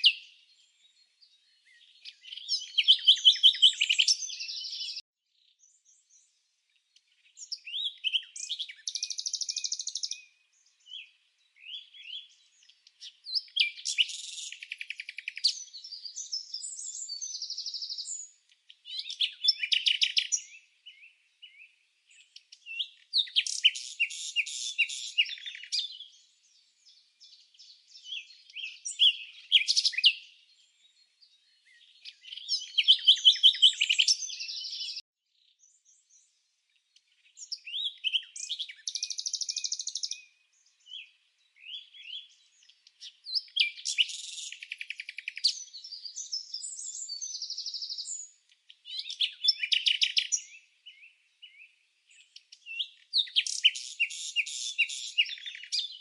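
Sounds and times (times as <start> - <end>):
birds chirping and trilling: 0.0 - 56.0.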